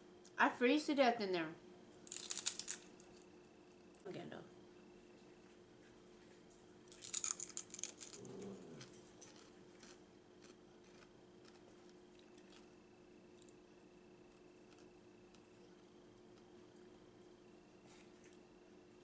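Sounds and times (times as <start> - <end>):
crunchy food being chewed: 2.1 - 4.0, 6.8 - 13.7, 14.3 - 17.3.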